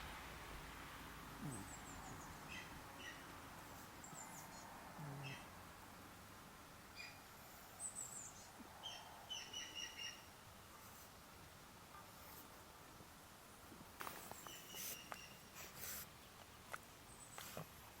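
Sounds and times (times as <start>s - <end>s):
soft outdoor hiss: 0.0s - 18.0s
birds chirping: 1.4s - 5.5s, 7.0s - 10.3s, 14.2s - 15.6s.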